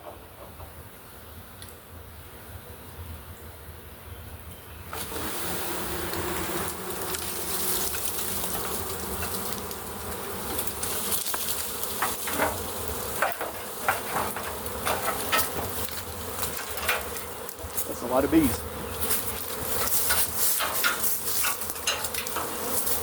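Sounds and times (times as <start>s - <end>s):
bee swarm buzzing: 4.9s - 23.0s
short ticks and crackles: 6.0s - 17.9s.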